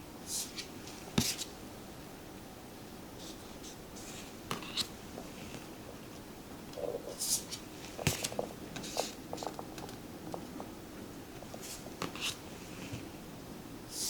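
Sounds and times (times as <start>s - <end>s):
cards sliding and tapping: 0.3s - 1.6s, 3.2s - 5.7s, 7.1s - 10.0s, 11.4s - 13.1s.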